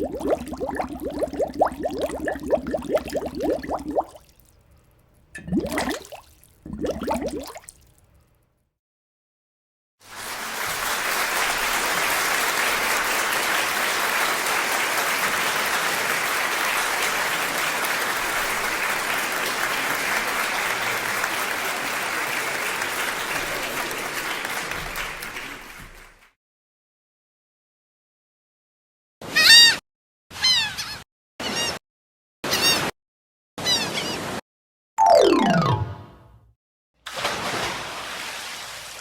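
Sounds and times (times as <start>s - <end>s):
crowd applauding: 10.1s - 26.3s.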